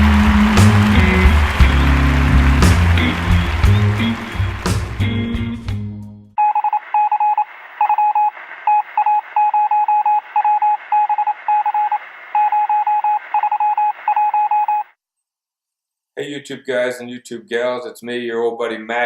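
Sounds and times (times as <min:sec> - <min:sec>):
morse code radio beeping: 0:06.4 - 0:14.9
thin radio hiss: 0:06.8 - 0:14.1.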